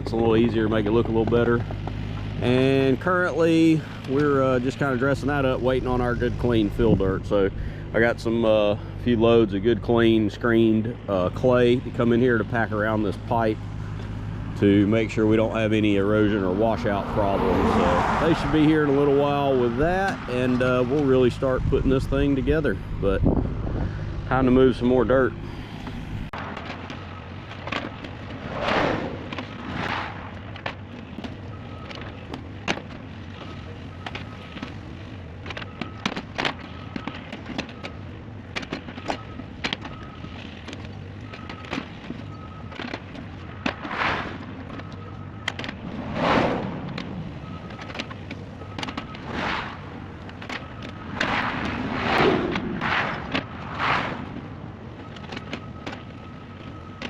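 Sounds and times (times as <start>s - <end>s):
repeated beeping: 46.8s - 49.4s.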